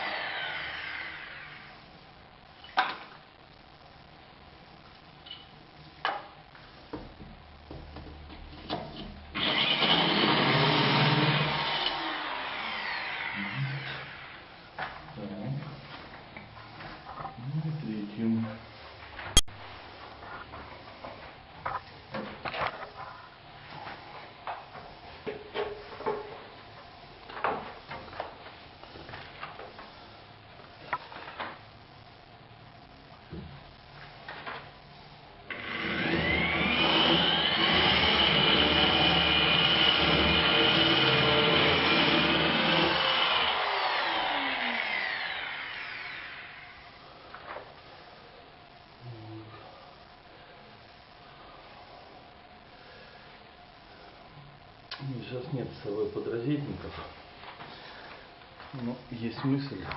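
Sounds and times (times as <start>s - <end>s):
power drill boring hole: 0.0s - 1.7s, 9.4s - 14.4s, 35.5s - 46.8s.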